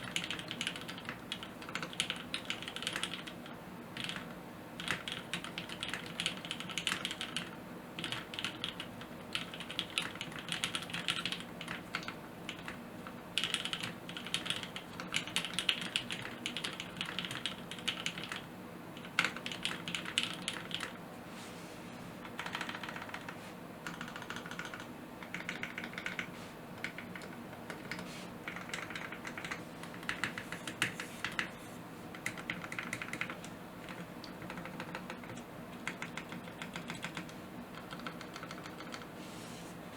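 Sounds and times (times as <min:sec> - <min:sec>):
mechanical keyboard typing: 0:00.0 - 0:03.4, 0:04.0 - 0:18.4, 0:19.0 - 0:20.9, 0:22.2 - 0:31.5, 0:32.2 - 0:39.1.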